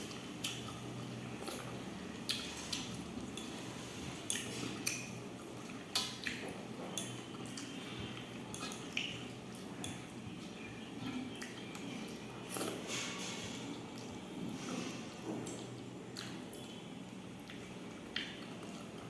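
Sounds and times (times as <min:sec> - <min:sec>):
wet chewing and mouth smacks: 0:04.3 - 0:10.1, 0:15.4 - 0:16.8, 0:17.4 - 0:19.0.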